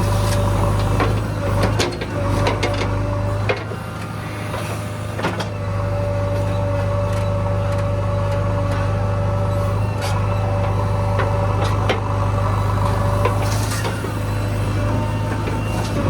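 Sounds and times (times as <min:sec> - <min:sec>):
diesel backhoe engine running: 0:00.0 - 0:16.0
digging knocks and clanks: 0:00.1 - 0:05.6, 0:12.8 - 0:16.0.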